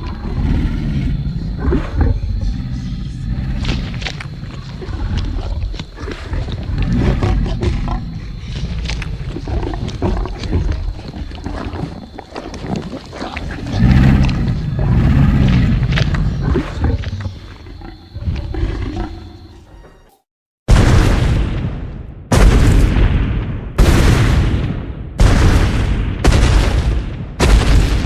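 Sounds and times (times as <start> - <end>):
dinosaur roaring: 0.0 - 3.9, 13.2 - 19.3.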